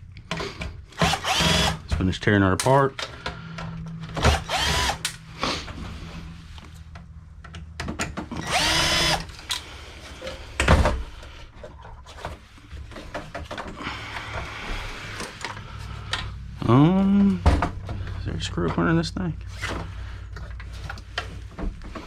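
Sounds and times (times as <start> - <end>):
cordless drill whining: 1.0 - 1.8, 4.2 - 5.1, 8.3 - 9.6
clicks and knocks of parts: 2.6 - 5.2, 6.9 - 8.5.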